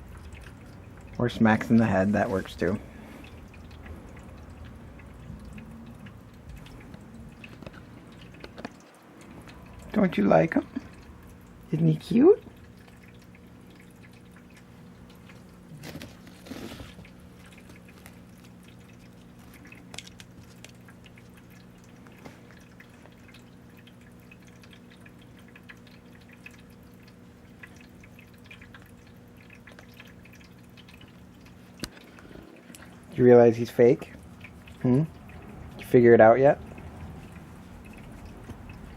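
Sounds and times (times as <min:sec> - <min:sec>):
low electrical hum: 0:00.0 - 0:38.9
faint ticks and taps: 0:00.2 - 0:10.0, 0:16.9 - 0:33.2, 0:36.6 - 0:38.9.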